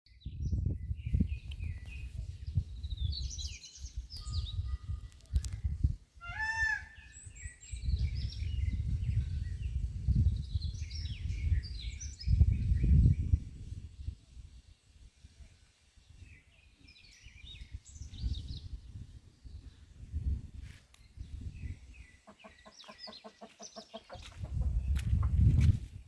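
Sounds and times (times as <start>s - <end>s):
chicks peeping: 22.3s - 25.6s.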